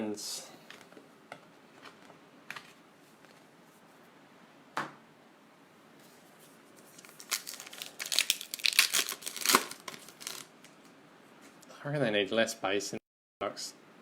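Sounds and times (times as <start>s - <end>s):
wrapper tearing and crinkling: 6.9s - 10.5s.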